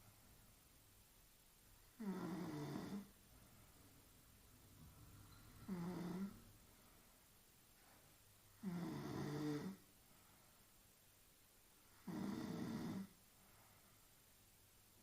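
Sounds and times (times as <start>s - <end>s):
woman snoring: 2.0s - 3.1s, 5.7s - 6.4s, 8.6s - 9.8s, 12.0s - 13.2s.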